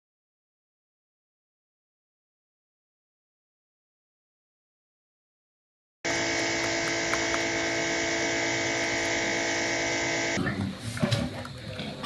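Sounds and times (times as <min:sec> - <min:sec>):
machine motor hum: 0:06.1 - 0:10.4.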